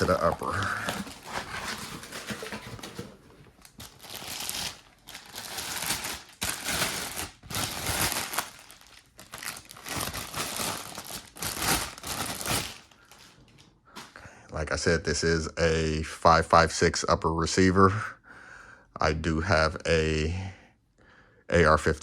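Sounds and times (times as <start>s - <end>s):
packaging crinkling and rustling: 0.0s - 14.2s.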